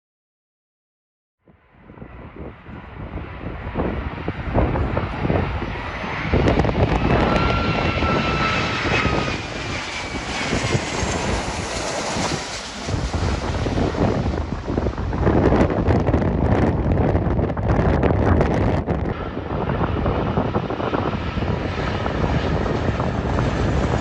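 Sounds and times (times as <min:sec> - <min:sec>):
wind buffeting microphone: 0:01.5 - 0:24.0
jet engines roaring: 0:01.8 - 0:24.0.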